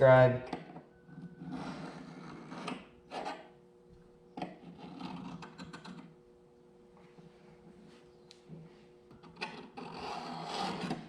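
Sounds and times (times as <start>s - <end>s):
scribe scratching steel blade: 9.8s - 11.0s.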